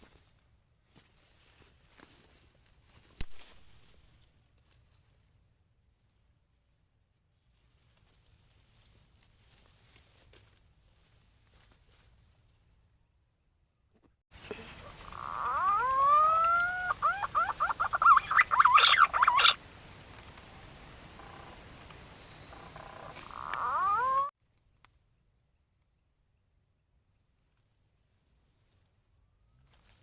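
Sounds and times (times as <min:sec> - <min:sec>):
whistled pigeon calls: 0:15.4 - 0:19.6.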